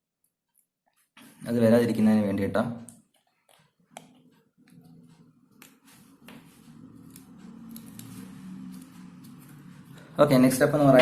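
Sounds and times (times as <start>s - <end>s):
low faint hum: 3.8s - 11.0s.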